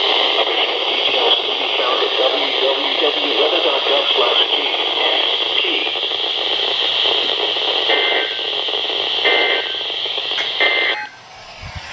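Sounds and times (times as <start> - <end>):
radio static hiss: 0.0 - 11.9
warbling data bursts: 10.4 - 11.9.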